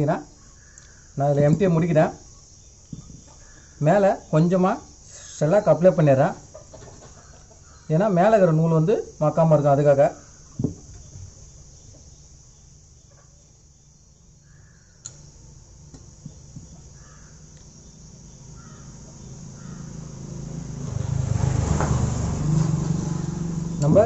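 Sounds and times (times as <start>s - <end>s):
faint bird calls: 0.0s - 8.2s, 14.4s - 15.1s, 16.2s - 20.3s.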